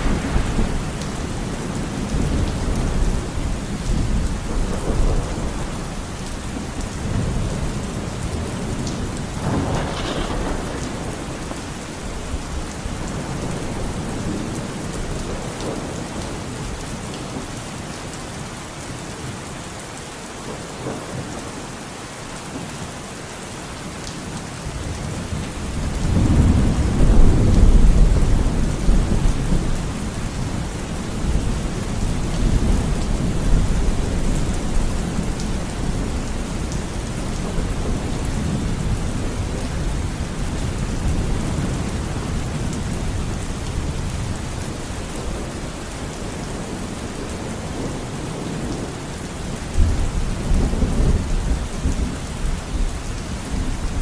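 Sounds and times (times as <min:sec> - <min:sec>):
rolling thunder: 0:00.0 - 0:06.2, 0:07.0 - 0:16.1, 0:24.8 - 0:45.5
steady rain falling: 0:00.0 - 0:54.0.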